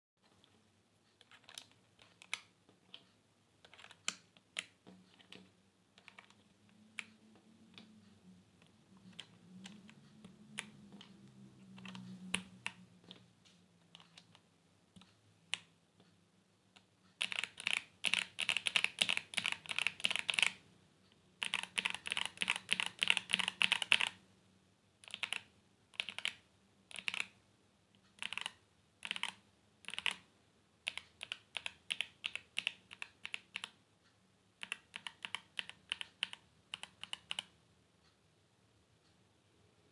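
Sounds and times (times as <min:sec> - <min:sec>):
mechanical keyboard typing: 0:01.2 - 0:13.2, 0:13.8 - 0:15.7, 0:16.8 - 0:20.6, 0:21.4 - 0:24.2, 0:25.0 - 0:27.4, 0:28.0 - 0:33.8, 0:34.6 - 0:37.6.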